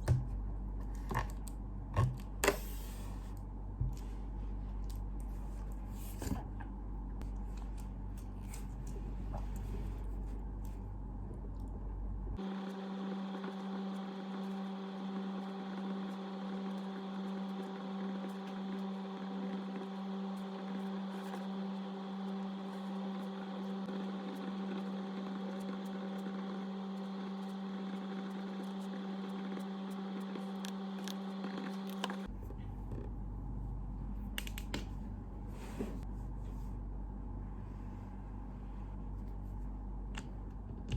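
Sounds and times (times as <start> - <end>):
electric appliance humming: 5.7 - 32.8.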